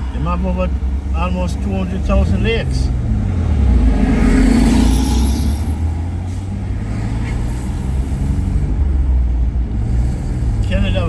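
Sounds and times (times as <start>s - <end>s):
car engine and tyres rumbling: 0.0s - 11.0s
rushing swell: 2.2s - 8.6s.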